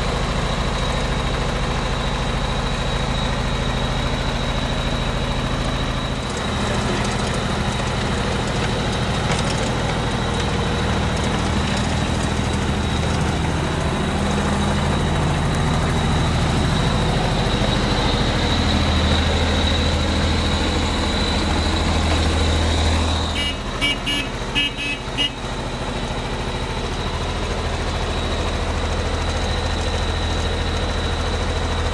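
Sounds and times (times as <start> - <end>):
diesel engine running: 0.0 - 31.9.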